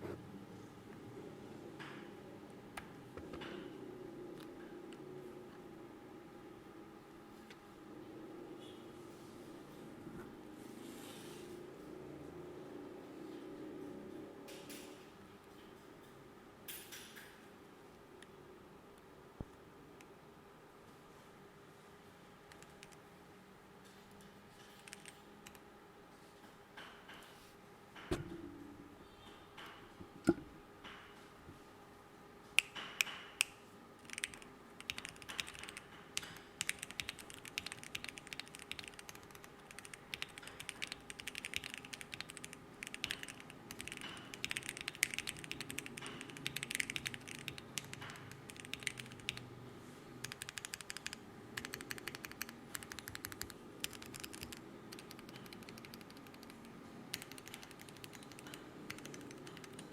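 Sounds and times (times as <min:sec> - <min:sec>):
fast typing on a keyboard: 0:22.5 - 0:23.0, 0:24.6 - 0:25.6, 0:34.0 - 0:49.5, 0:50.2 - 0:59.9.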